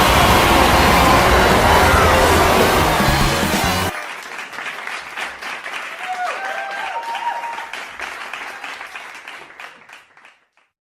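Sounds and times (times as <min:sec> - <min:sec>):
children cheering: 0:00.0 - 0:04.9, 0:05.7 - 0:09.9
children clapping: 0:02.6 - 0:10.8.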